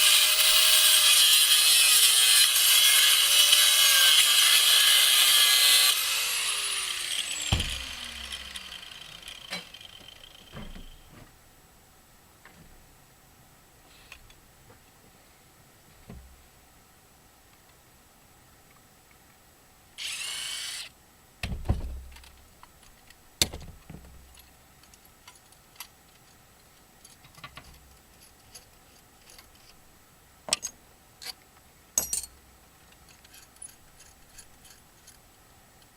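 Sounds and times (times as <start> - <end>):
cordless drill whirring: 4.2 - 10.3, 20.0 - 20.9.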